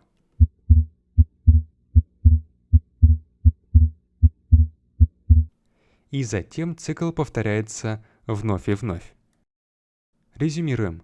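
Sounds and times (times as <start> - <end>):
heartbeat through stethoscope: 0.4 - 5.5.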